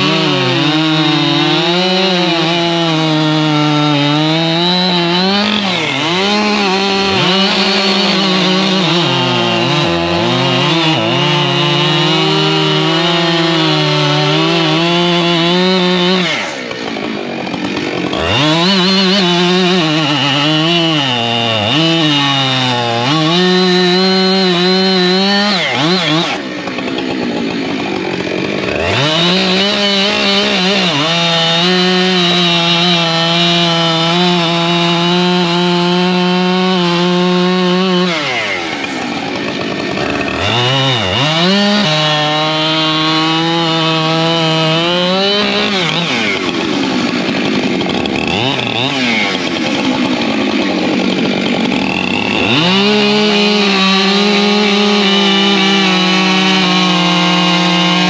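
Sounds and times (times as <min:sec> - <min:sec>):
chainsaw revving: 0:00.0 - 0:58.0.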